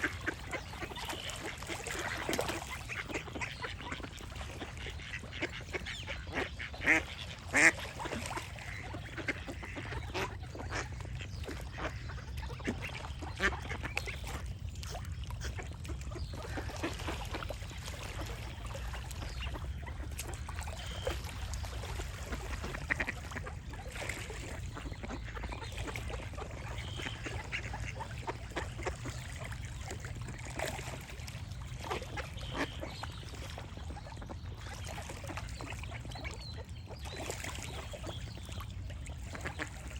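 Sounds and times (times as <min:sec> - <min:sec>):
duck quacking: 0:04.8 - 0:07.7.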